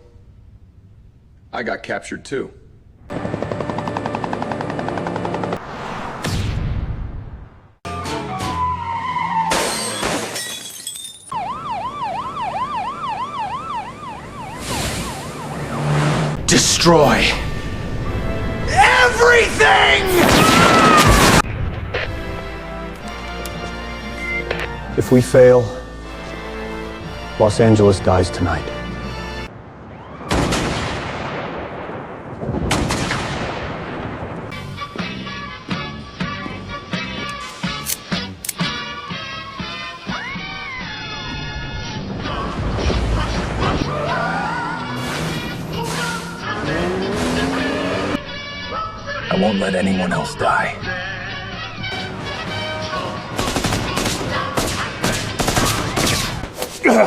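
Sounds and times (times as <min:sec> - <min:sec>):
blast sound effects: 0:05.6 - 0:10.2, 0:20.0 - 0:22.4
emergency siren wailing: 0:07.9 - 0:09.6, 0:11.3 - 0:21.4, 0:43.8 - 0:49.0, 0:52.0 - 0:53.4.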